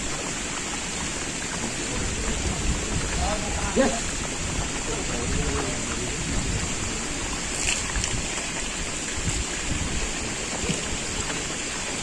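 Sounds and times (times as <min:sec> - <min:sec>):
rushing water: 0:00.0 - 0:12.0.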